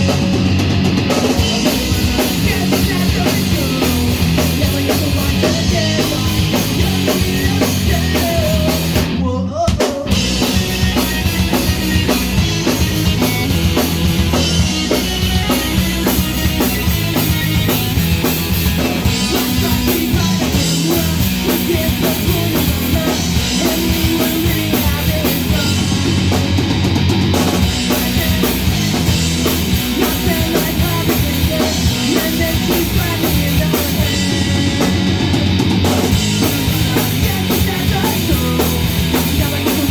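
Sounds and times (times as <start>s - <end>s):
drum kit: 0.0s - 39.9s
punk rock band playing: 0.0s - 39.9s.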